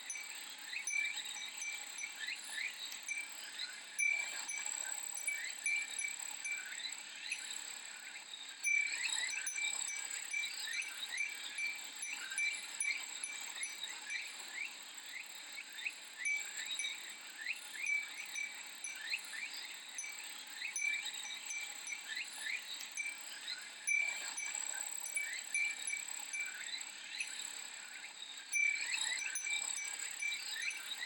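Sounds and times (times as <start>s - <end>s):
cicadas droning: 0.0s - 31.0s
glass wind bell tinkling: 0.0s - 31.0s.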